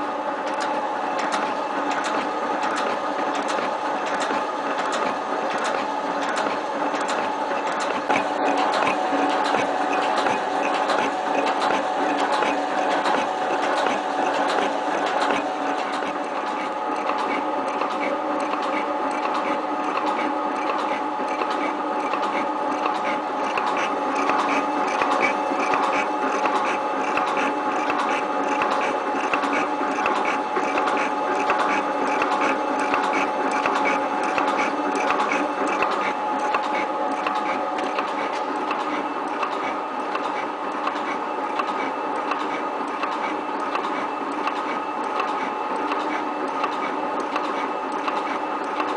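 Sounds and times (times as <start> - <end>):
metal shaping machine running: 0.0 - 48.9.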